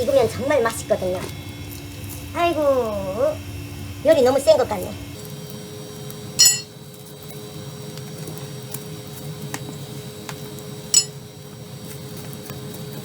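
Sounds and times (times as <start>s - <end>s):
boiler motor humming: 0.0s - 13.0s
sharp metal clinks: 6.4s - 6.7s, 11.0s - 11.2s.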